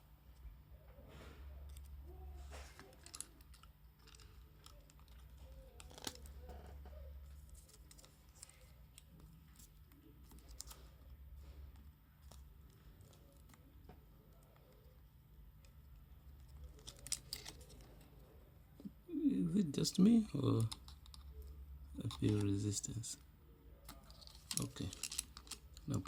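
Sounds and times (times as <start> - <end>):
plastic phone parts clicking: 2.8 - 6.6, 16.4 - 18.0, 20.5 - 21.4, 23.8 - 25.9.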